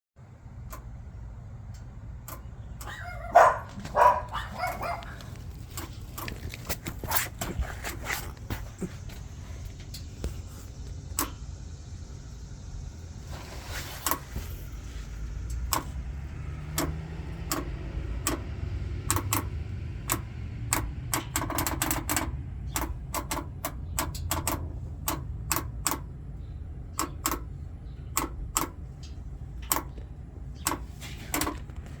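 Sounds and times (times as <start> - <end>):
truck engine low rumble: 0.2 - 32.0
sharp clicks: 0.6 - 1.0, 1.7 - 3.0, 14.0 - 32.0.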